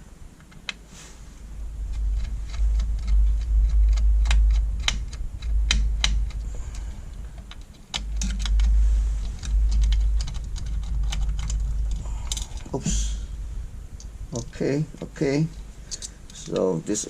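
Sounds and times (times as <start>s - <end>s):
handling rumble: 0.0s - 17.0s
clicks and knocks of parts: 7.4s - 12.7s, 15.5s - 16.7s.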